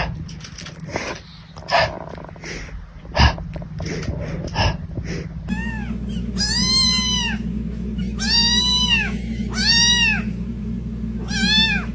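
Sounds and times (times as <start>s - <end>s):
steady low hum: 0.0s - 11.9s
cat meowing: 5.5s - 7.4s, 8.0s - 10.3s, 11.2s - 11.9s.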